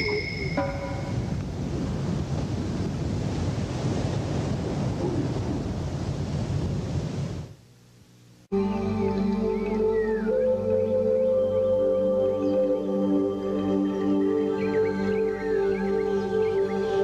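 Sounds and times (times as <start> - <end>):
rushing wind on microphone: 0.0 - 7.6.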